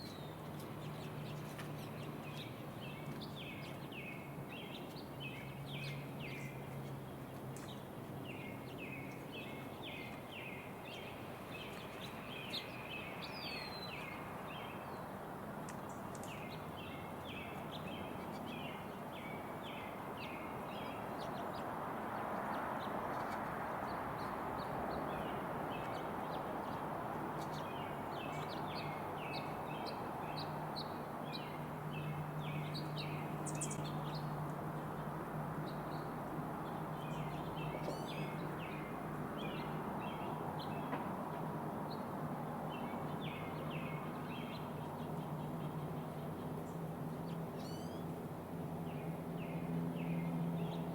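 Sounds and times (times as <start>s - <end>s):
songbirds calling: 0.0s - 50.9s.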